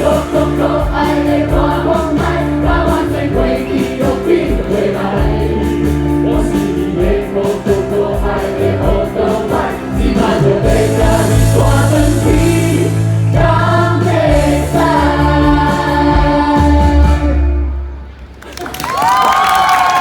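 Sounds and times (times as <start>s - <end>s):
group of people singing: 0.0s - 17.6s
live band playing: 0.0s - 18.4s.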